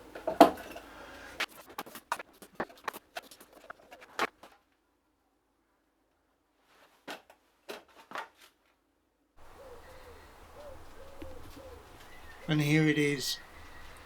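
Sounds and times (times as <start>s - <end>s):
pigeon cooing: 9.4s - 14.0s.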